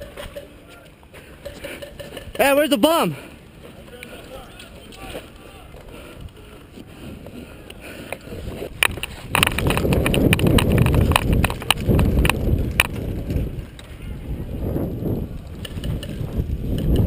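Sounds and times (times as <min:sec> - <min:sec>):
quick footsteps: 0:00.0 - 0:13.9
gear rattling: 0:08.7 - 0:13.6.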